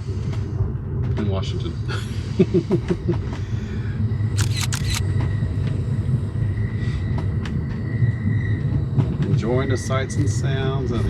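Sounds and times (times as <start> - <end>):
train wheels rumbling on rails: 0.0 - 11.0
sharp clicks: 4.4 - 5.0.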